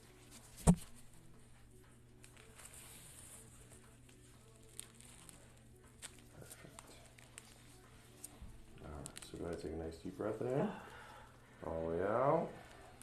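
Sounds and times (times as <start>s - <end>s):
loud sharp thump: 0.6s - 0.8s.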